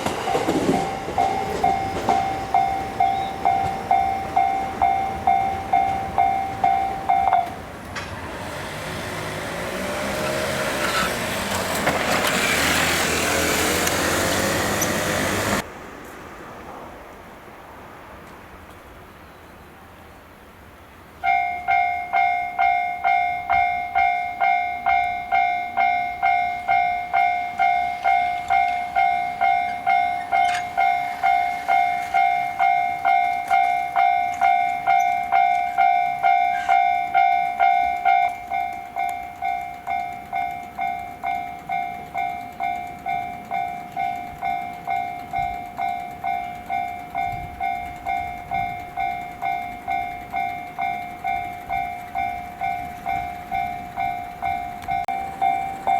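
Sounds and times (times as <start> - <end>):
level-crossing warning bell ringing: 0.0 - 15.7, 21.2 - 55.9.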